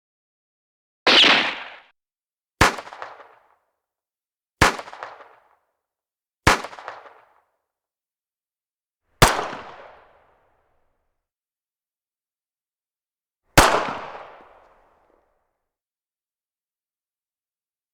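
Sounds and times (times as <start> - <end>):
pistol gunshots: 1.1 - 1.9, 2.6 - 3.5, 4.6 - 5.5, 6.5 - 7.3, 9.2 - 10.0.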